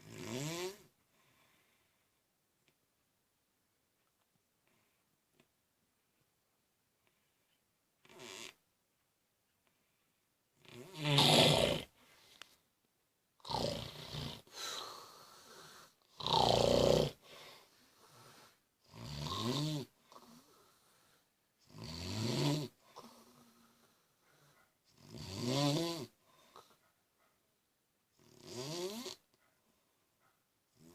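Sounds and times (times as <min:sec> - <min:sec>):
man snoring: 0:00.0 - 0:00.9, 0:10.6 - 0:12.0, 0:13.4 - 0:17.3, 0:18.1 - 0:20.6, 0:21.7 - 0:23.7, 0:25.0 - 0:26.2, 0:28.2 - 0:29.2.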